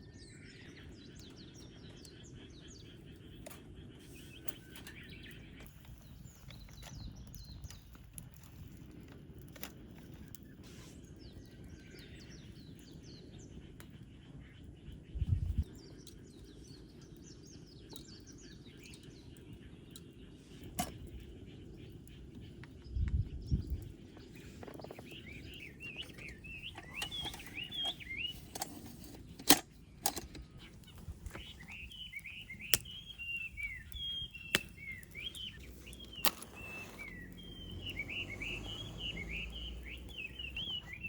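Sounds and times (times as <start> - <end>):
small birds chirping: 0.0 - 41.0
low outdoor rumble: 21.0 - 41.0
faint clicks: 22.6 - 41.0.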